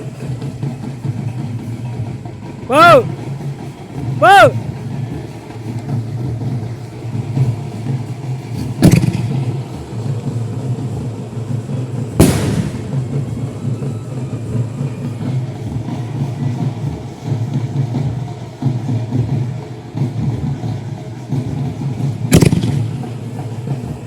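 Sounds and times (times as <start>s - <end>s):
steady low rumble: 8.7s - 15.6s
firework shells bursting: 8.8s - 9.5s, 12.2s - 13.6s, 22.3s - 23.2s.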